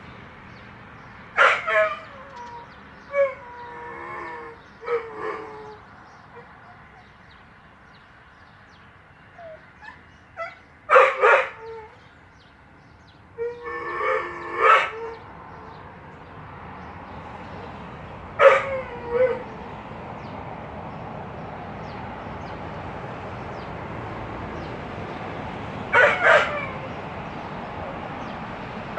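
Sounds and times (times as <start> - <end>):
dog whimpering and wailing: 13.4 - 15.8.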